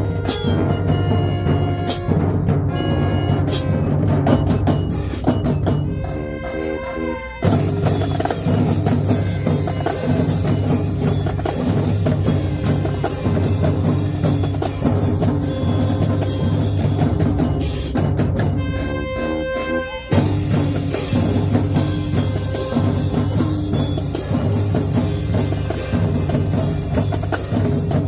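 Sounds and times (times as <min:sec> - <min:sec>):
drumline beating: 0:00.0 - 0:28.0
marching band playing: 0:00.0 - 0:28.0
low brass sustained: 0:18.5 - 0:27.1.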